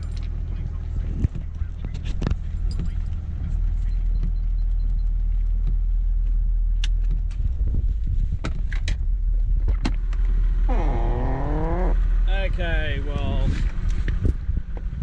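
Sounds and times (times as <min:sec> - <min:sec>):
vehicle engine rumbling: 0:10.1 - 0:12.8
falling whine: 0:10.7 - 0:12.0.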